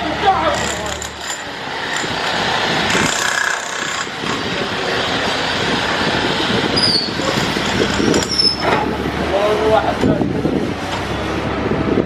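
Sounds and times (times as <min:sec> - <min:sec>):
backhoe loader rumbling: 0:00.0 - 0:12.0
high metallic squeals: 0:06.6 - 0:08.8.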